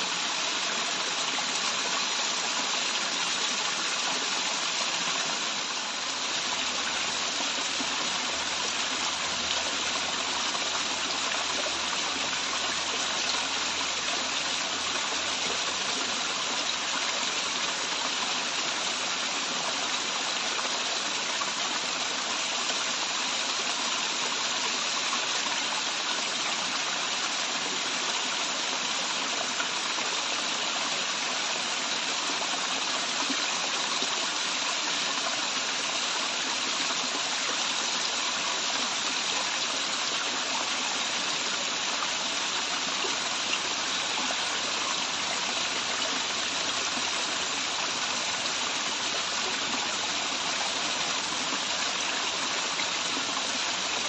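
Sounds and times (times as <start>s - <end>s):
waterfall rushing water: 0.0s - 54.0s.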